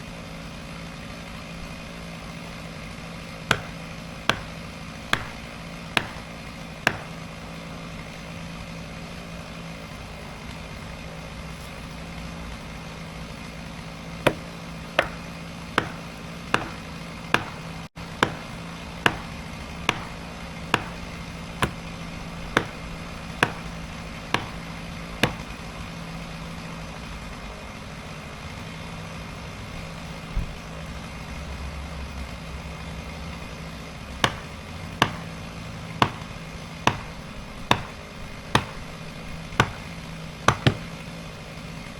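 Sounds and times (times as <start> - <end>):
chainsaw idling: 0.3 - 10.6, 12.2 - 27.2, 33.4 - 41.9
hammer striking wedges: 3.5 - 7.4, 14.2 - 25.9, 34.2 - 41.0.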